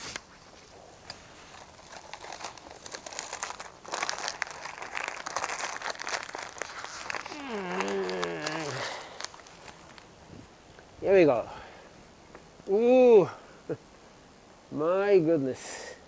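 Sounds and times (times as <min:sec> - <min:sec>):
dry crinkling rustle: 0:00.0 - 0:12.5.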